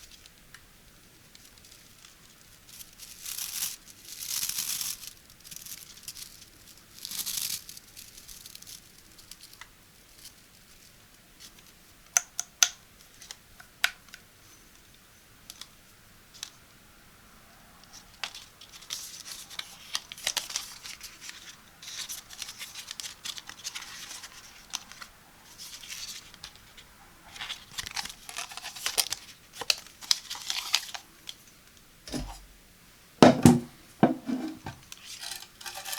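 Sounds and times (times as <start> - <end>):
packaging rustling and tearing: 1.7 - 9.0, 18.6 - 31.0.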